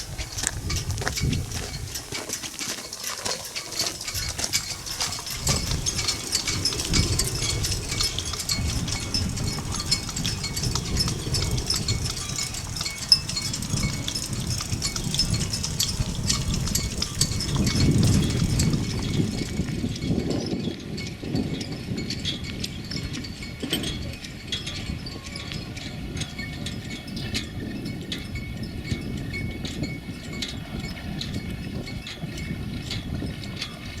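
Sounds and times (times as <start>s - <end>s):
footsteps on a path: 0.0s - 20.0s
wind rumbling on microphone: 0.0s - 34.0s.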